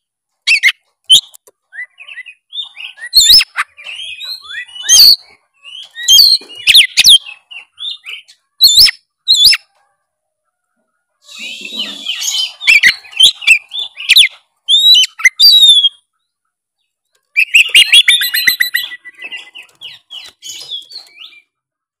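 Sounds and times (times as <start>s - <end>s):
bird singing: 0.5s - 9.7s, 11.2s - 21.6s.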